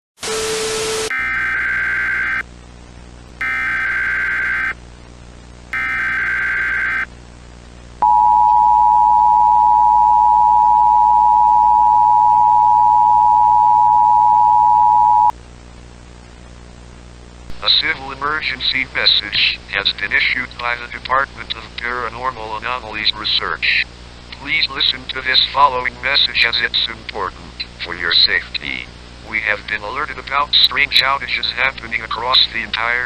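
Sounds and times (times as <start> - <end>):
two-tone attention signal: 0.3 - 2.4, 3.4 - 4.8, 5.8 - 7.1
buzzy data tones: 1.1 - 2.4, 3.4 - 4.8, 5.7 - 7.1.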